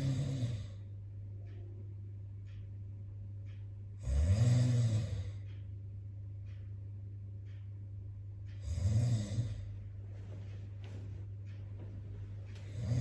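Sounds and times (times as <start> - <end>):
man snoring: 0.0 - 0.8, 4.0 - 5.4, 8.6 - 9.7, 12.7 - 13.0.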